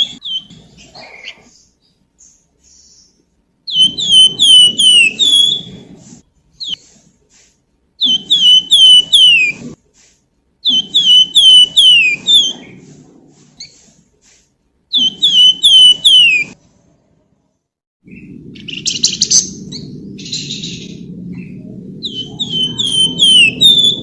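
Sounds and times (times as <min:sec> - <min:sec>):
songbird whistling: 0:02.2 - 0:06.0, 0:08.0 - 0:09.7, 0:10.6 - 0:12.8, 0:14.9 - 0:16.6, 0:18.6 - 0:24.0.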